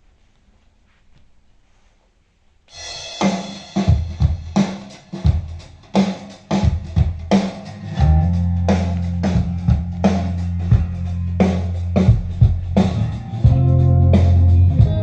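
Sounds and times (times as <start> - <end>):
drum beats: 2.7 - 15.0
held bass note: 7.8 - 15.0
band music over loudspeaker: 7.9 - 15.0.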